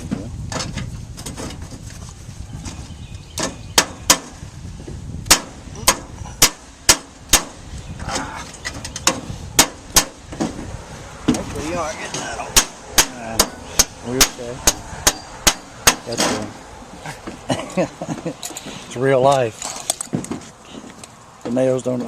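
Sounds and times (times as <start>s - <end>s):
hammer driving nails into metal: 12.6s - 16.4s.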